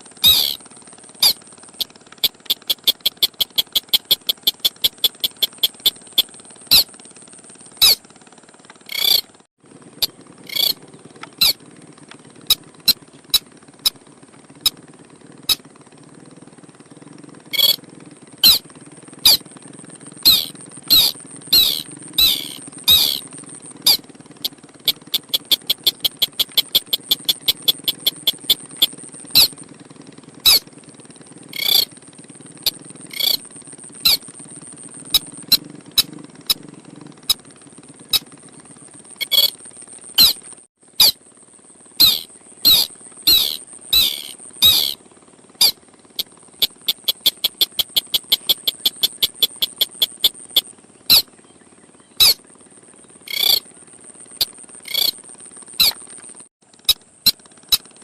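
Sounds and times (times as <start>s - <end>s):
crake calling: 0.0s - 0.6s, 1.2s - 6.9s, 7.8s - 8.0s, 8.8s - 9.3s, 10.0s - 11.6s, 17.6s - 17.8s, 18.4s - 18.6s, 19.2s - 19.4s, 20.2s - 29.6s, 30.4s - 30.6s, 31.5s - 31.9s, 32.6s - 36.6s, 39.1s - 41.2s, 42.0s - 45.0s, 45.6s - 51.3s, 52.2s - 52.4s, 53.3s - 53.6s, 54.2s - 56.3s.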